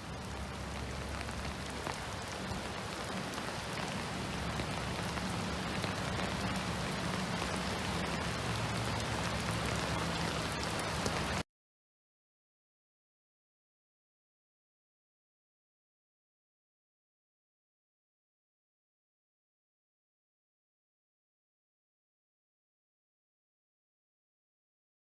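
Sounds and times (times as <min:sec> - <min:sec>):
river water rushing: 0:00.0 - 0:11.4.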